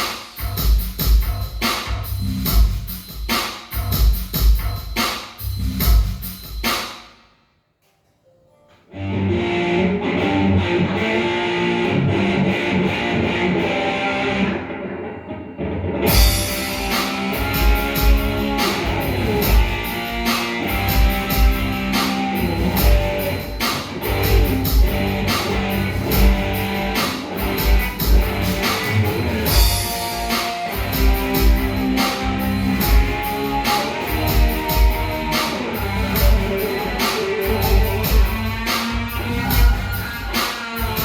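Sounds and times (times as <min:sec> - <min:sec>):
drums beating: 0:00.0 - 0:07.0, 0:16.1 - 0:41.0
electric guitar: 0:08.9 - 0:41.0
rock band playing live: 0:09.2 - 0:15.0, 0:15.6 - 0:41.0.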